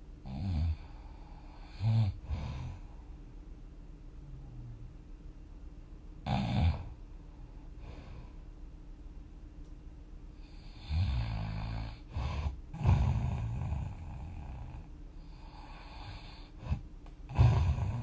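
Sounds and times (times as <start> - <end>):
loud low snoring: 0.2 - 2.9, 6.2 - 7.0, 10.4 - 18.0
snort: 0.3 - 2.9, 6.2 - 7.0, 10.4 - 18.0.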